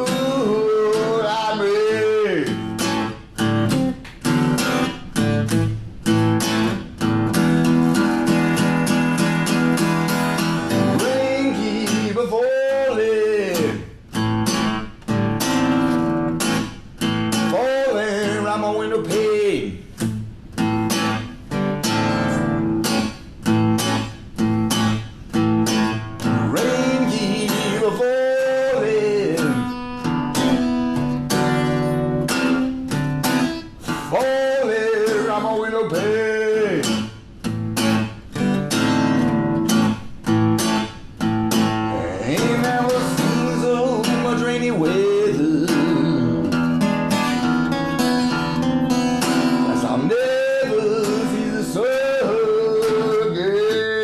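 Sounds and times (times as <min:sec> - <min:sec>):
person singing: 0:00.0 - 0:02.7, 0:10.7 - 0:13.9, 0:26.3 - 0:29.8, 0:33.9 - 0:37.0, 0:41.8 - 0:46.6, 0:49.4 - 0:54.0
acoustic guitar strumming: 0:00.0 - 0:54.0.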